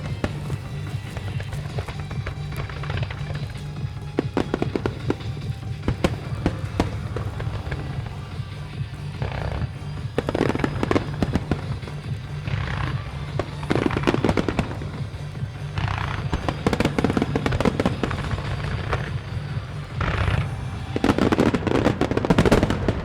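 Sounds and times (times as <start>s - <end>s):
firework shells bursting and crackling: 0.0s - 23.0s
music from loudspeakers: 0.0s - 23.0s.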